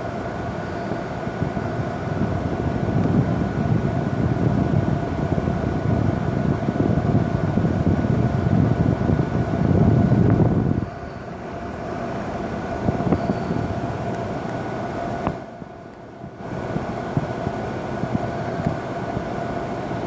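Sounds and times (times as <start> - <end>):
air conditioner fan blowing: 0.0 - 20.0
air conditioner hum: 0.0 - 20.0.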